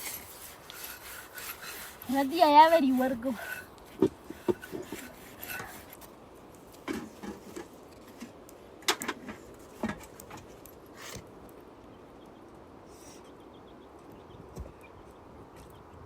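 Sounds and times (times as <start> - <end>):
objects knocking and rubbing: 0.0 - 6.1, 6.8 - 11.2.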